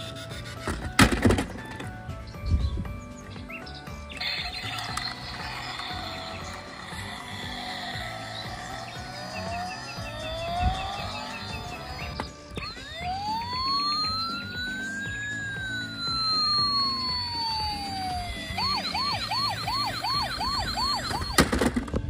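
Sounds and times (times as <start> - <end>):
background music: 0.0 - 22.0
siren wailing and yelping: 4.1 - 21.6.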